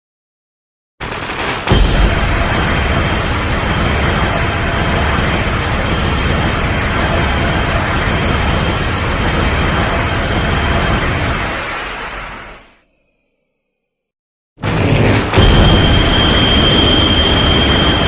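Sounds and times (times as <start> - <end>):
rushing blast over deep rumble: 1.7 - 12.6, 15.2 - 18.0.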